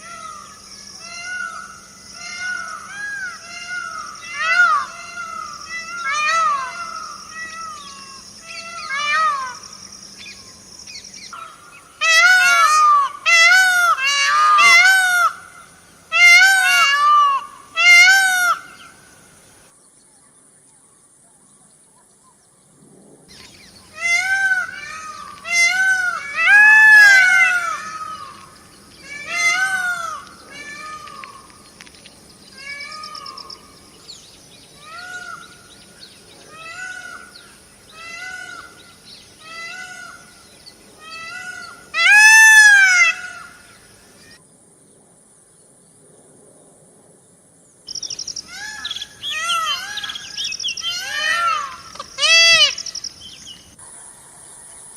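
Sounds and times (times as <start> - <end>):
bird calling: 0.0 - 19.1, 23.3 - 44.4, 47.9 - 53.8.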